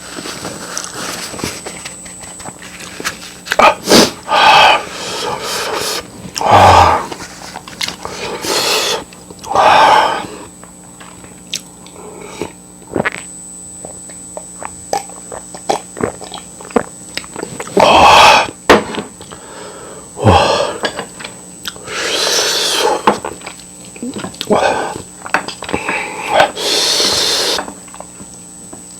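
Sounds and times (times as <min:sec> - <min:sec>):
person chewing noodles: 0:02.5 - 0:10.5, 0:14.6 - 0:18.6, 0:21.6 - 0:28.1
noisy slurps: 0:03.5 - 0:10.5, 0:21.6 - 0:23.6, 0:24.4 - 0:27.7.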